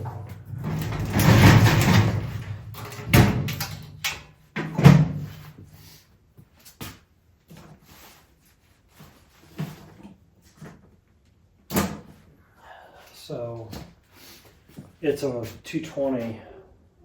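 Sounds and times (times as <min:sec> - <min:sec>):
metal clunks and rattling: 0:00.0 - 0:05.3.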